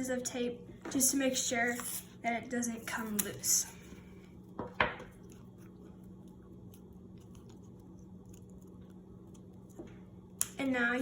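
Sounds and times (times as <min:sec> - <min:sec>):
steady low hum: 0:00.0 - 0:11.0
tape crinkles and clicks: 0:05.1 - 0:10.7.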